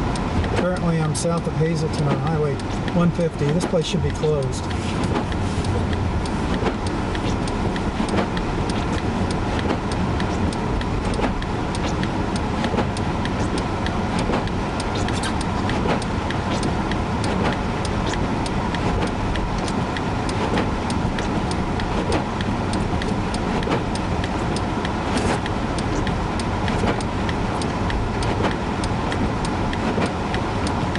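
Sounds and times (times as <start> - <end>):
wind and road noise in car: 0.0 - 30.9
sharp ticks: 0.1 - 30.9.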